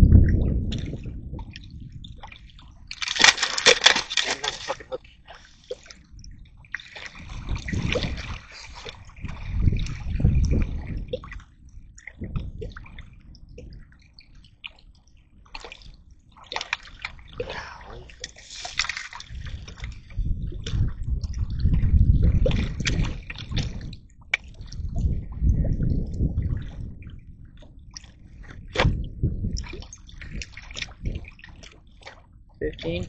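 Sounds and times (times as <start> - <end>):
microphone handling rumble: 0.0 - 2.2, 7.2 - 11.4, 19.3 - 31.4
water splashing and sloshing: 0.0 - 33.0.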